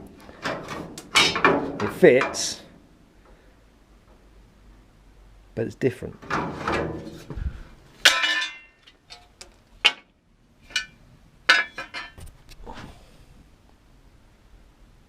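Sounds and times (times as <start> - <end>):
metal panels clanking: 0.0 - 2.9, 6.2 - 7.3, 8.0 - 10.1, 10.7 - 12.2.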